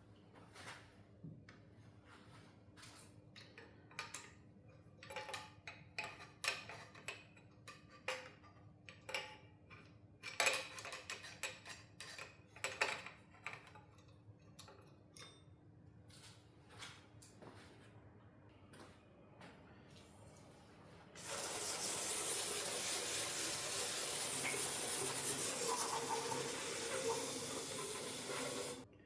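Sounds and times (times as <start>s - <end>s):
tools and metal parts clinking: 9.0s - 15.6s.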